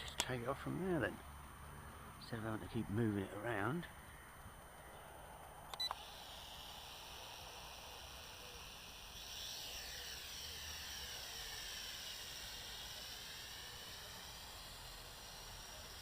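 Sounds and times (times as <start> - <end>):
toy drone motors whining: 5.7 - 16.0.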